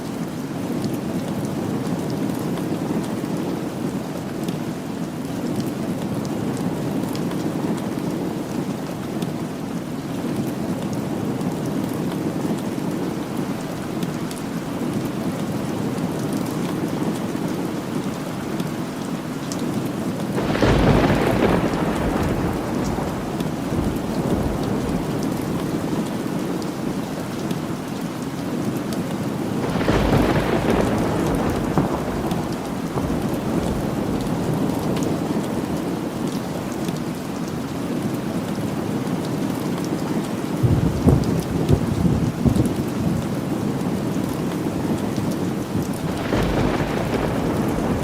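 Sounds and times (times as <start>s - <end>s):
steady rain falling: 0.0s - 48.0s
thunder rumbling: 20.4s - 27.4s, 29.6s - 36.2s, 40.6s - 43.3s, 45.6s - 48.0s.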